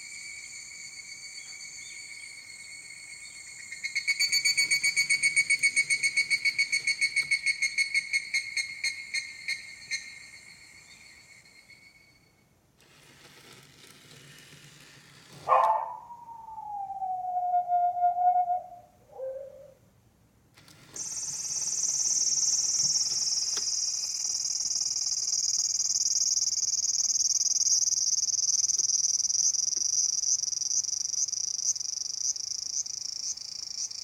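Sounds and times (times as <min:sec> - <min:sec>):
insect chorus: 0:00.0 - 0:12.5, 0:21.0 - 0:34.0
insect chirps: 0:00.0 - 0:12.6, 0:21.0 - 0:34.0.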